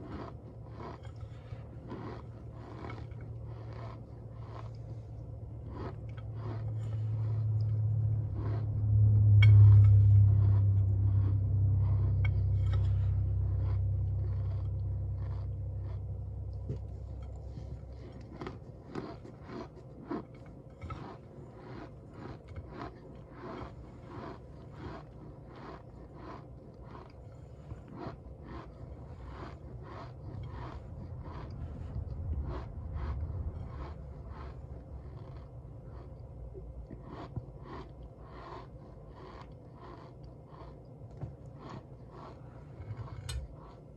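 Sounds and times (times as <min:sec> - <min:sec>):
cornstarch crunching and squeaking: 0:00.0 - 0:40.8, 0:41.4 - 0:43.9
low rumble: 0:00.4 - 0:19.0, 0:28.6 - 0:39.6.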